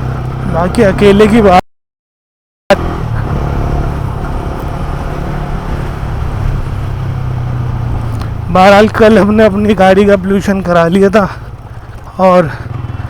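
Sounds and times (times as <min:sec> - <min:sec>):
motorcycle engine running: 0:00.0 - 0:01.6, 0:02.7 - 0:13.0
road and wind noise: 0:00.0 - 0:01.6, 0:02.7 - 0:13.0.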